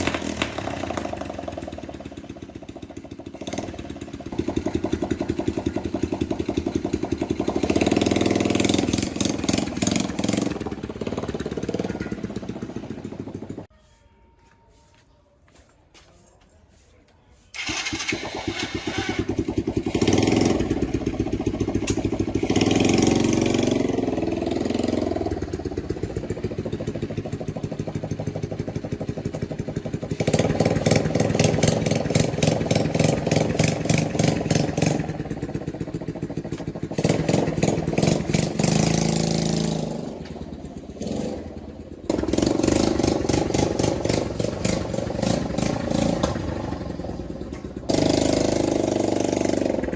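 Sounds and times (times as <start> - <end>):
motorbike engine without muffler: 0.0 - 13.7, 17.5 - 49.9.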